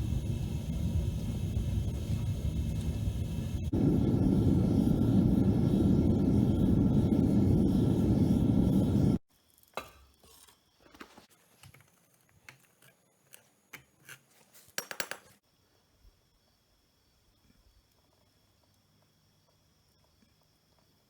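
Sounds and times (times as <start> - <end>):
burner roar: 0.0 - 9.2.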